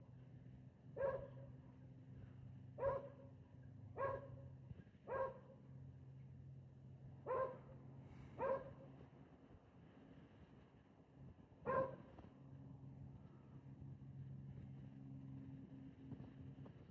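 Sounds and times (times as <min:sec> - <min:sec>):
steady low hum: 0:00.0 - 0:16.9
dog barking: 0:01.0 - 0:01.4, 0:02.8 - 0:03.2, 0:04.0 - 0:04.4, 0:05.1 - 0:05.5, 0:07.3 - 0:07.7, 0:08.4 - 0:08.8, 0:11.7 - 0:12.0.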